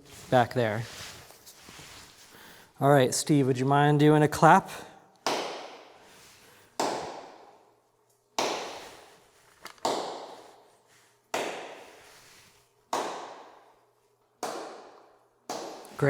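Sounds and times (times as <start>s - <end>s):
hand claps with cave reverb: 5.2s - 5.9s, 6.8s - 7.5s, 8.4s - 9.0s, 9.8s - 10.5s, 11.3s - 12.0s, 12.9s - 13.6s, 14.4s - 16.0s.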